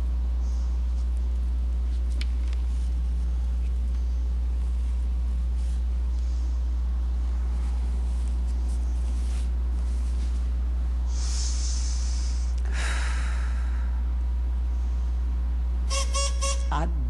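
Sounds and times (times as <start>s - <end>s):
low electrical hum: 0.0s - 17.0s
breathy puffs of air: 11.0s - 15.2s.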